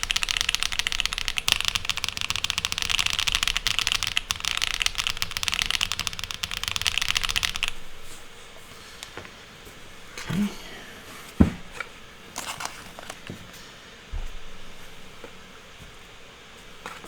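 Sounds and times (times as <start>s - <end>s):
fast typing on keyboard: 0.0s - 7.9s.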